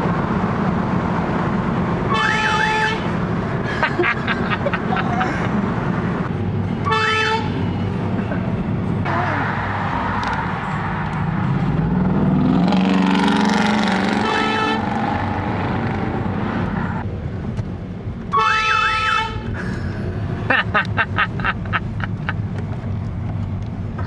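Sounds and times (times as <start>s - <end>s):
road noise inside moving car: 0.0s - 24.0s
car air horn blast: 2.1s - 3.1s, 6.8s - 7.6s, 14.2s - 14.9s, 18.3s - 19.4s
low engine hum: 3.0s - 6.9s.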